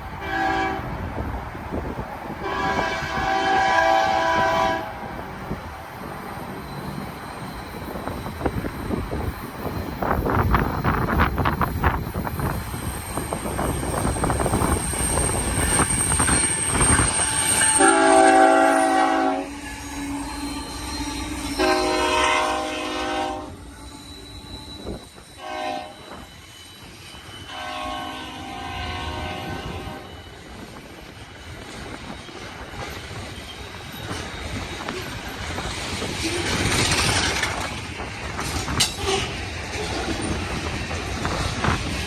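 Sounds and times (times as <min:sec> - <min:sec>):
train rumbling past: 0:00.0 - 0:42.0
locomotive air horn blasts: 0:00.2 - 0:00.9, 0:02.4 - 0:05.1, 0:16.7 - 0:26.2, 0:27.3 - 0:30.4.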